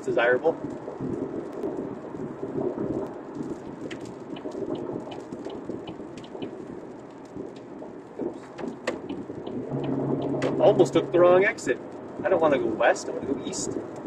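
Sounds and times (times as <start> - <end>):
raindrops ticking on windshield: 0.0 - 9.6
road and tyre noise: 0.0 - 14.0.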